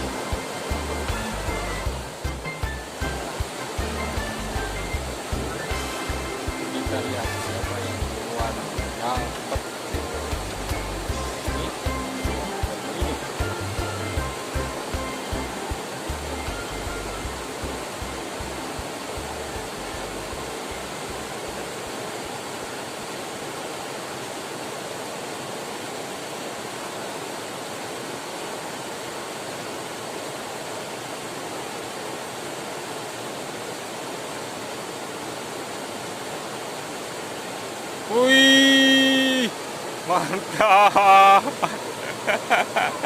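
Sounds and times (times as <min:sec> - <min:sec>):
background music beat: 0:00.0 - 0:19.4
river flowing: 0:00.0 - 0:43.0.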